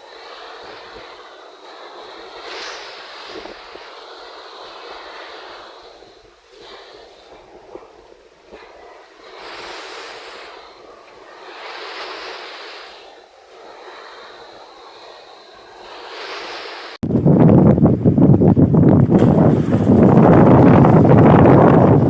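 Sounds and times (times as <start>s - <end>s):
sea waves: 0.0s - 17.0s
wind: 0.0s - 22.0s.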